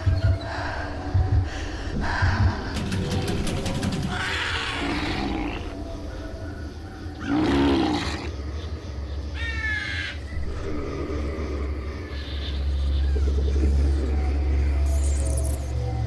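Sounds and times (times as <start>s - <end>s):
rapid rattle of clicks: 2.7s - 5.3s
loud roar: 4.0s - 5.8s.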